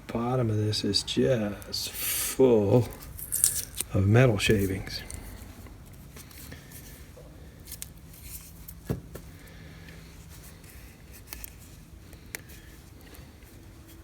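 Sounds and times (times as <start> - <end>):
small metal parts clicking and scraping: 2.9 - 5.4.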